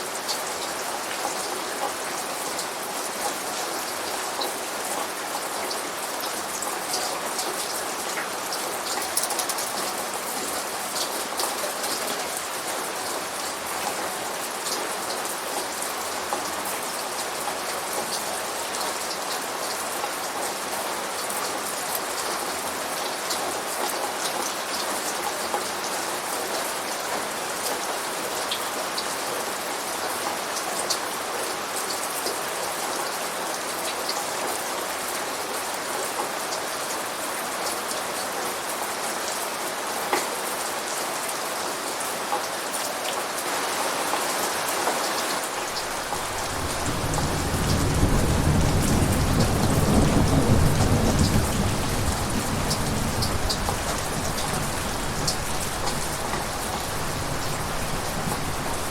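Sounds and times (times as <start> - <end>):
heavy rain falling: 0.0 - 58.9
low thunder rumble: 45.7 - 58.9.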